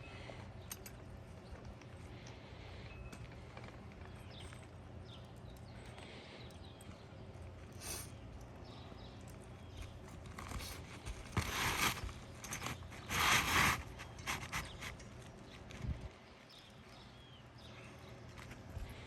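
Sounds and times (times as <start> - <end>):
roof shingles scraping and rustling: 10.1 - 15.9.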